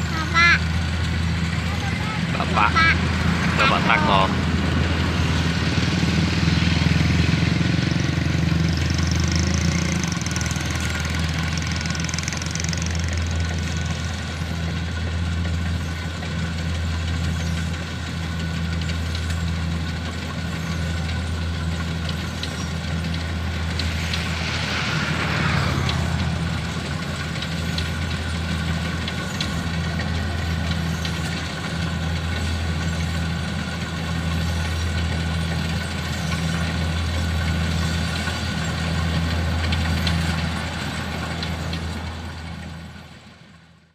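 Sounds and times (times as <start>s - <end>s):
diesel engine droning: 0.0s - 43.9s
rushing noise: 21.4s - 32.7s.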